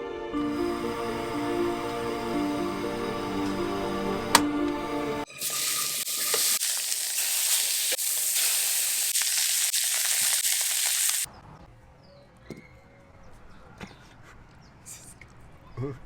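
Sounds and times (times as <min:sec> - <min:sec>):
music: 0:00.0 - 0:05.3
food sizzling in a pan: 0:05.3 - 0:11.3.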